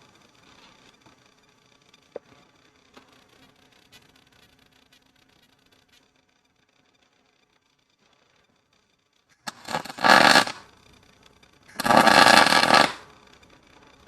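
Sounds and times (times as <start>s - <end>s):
arc welder crackling hiss: 9.5s - 10.9s, 11.7s - 13.2s.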